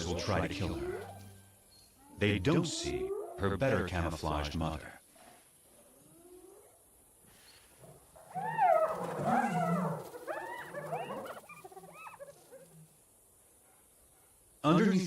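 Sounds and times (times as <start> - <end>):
hyenas yelping and whooping: 0.0 - 2.2, 7.8 - 13.0.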